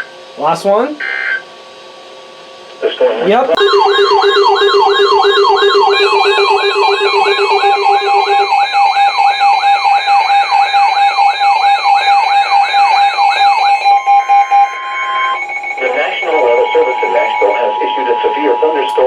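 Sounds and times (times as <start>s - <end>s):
fast falling electronic whoop: 3.6s - 15.8s
steady electronic tones: 3.6s - 18.8s.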